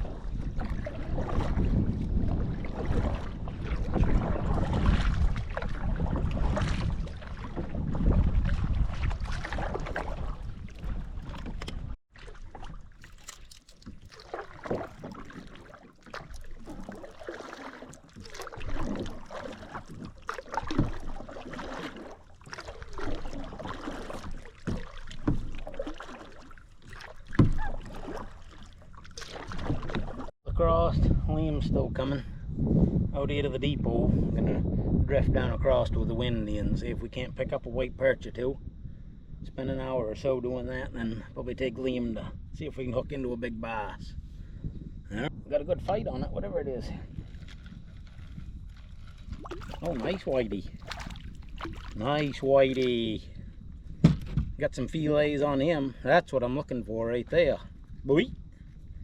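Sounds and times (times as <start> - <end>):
water splashes: 0.0 - 30.3, 46.9 - 58.7
paddle in water: 0.0 - 30.4, 46.7 - 59.0.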